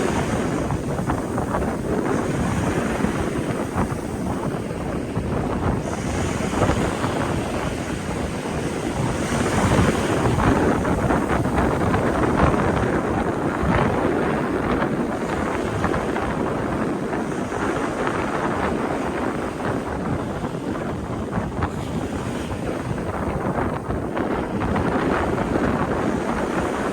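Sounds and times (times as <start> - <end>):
sea waves washing on shore: 0.0 - 26.9
strong wind buffeting microphone: 0.0 - 26.9.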